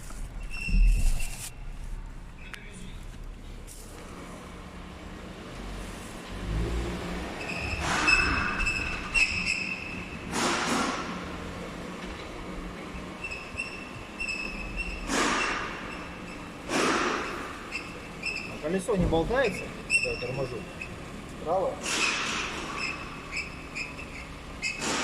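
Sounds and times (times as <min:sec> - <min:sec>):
car road rumble: 0:00.0 - 0:25.0
high piercing brake squeal: 0:07.4 - 0:10.2, 0:13.2 - 0:16.6, 0:17.2 - 0:18.8, 0:19.4 - 0:21.0, 0:21.9 - 0:24.9.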